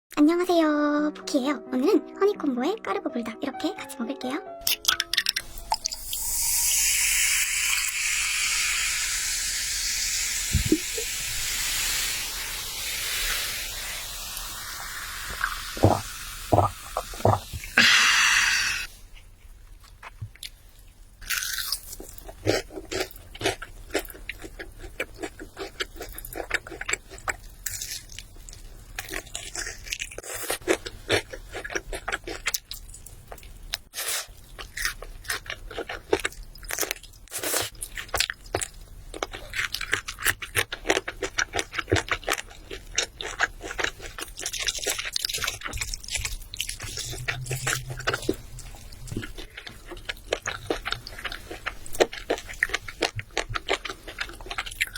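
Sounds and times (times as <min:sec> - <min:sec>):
steady hiss: 0:06.1 - 0:18.9
chewing crispy fried chicken: 0:19.7 - 0:54.9.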